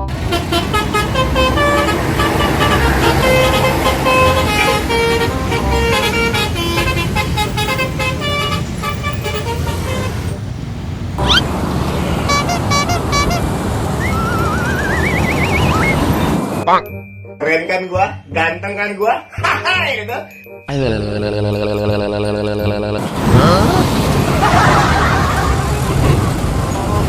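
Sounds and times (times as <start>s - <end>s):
multi-tone bus horn melody: 0.0s - 10.6s, 11.2s - 16.2s, 24.4s - 27.0s
engine running low: 0.0s - 16.6s, 23.0s - 27.0s.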